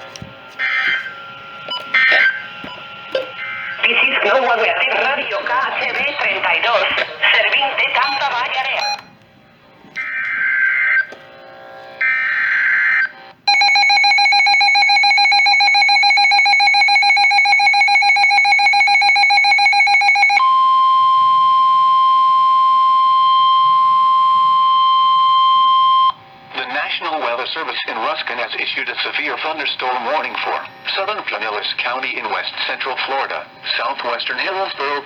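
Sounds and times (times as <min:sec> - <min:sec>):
steady warning alarm tone: 0:00.6 - 0:09.2, 0:10.0 - 0:26.5.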